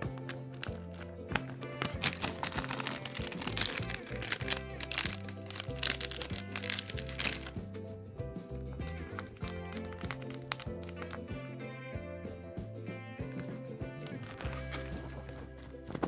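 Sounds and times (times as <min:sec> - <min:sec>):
paper crinkling and crackling: 0:00.0 - 0:07.6, 0:08.8 - 0:11.2, 0:13.4 - 0:16.0
background music: 0:00.0 - 0:16.0.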